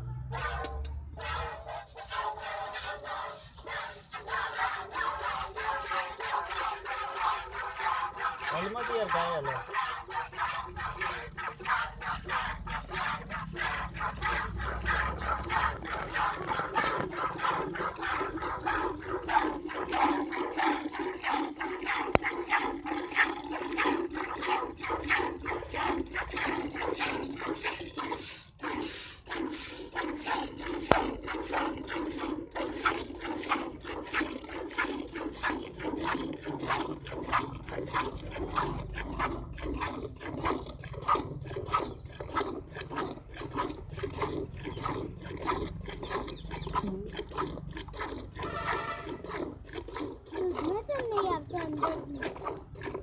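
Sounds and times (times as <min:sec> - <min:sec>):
milk squirting into a pail: 0:00.5 - 0:53.0.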